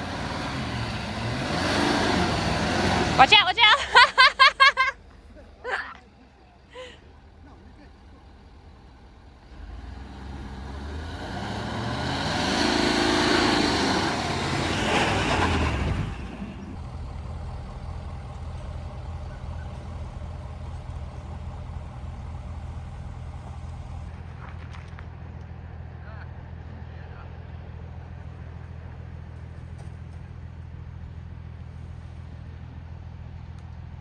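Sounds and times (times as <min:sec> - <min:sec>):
vehicle passing by: 0:00.0 - 0:05.8, 0:06.7 - 0:24.1
low engine hum: 0:00.0 - 0:34.0.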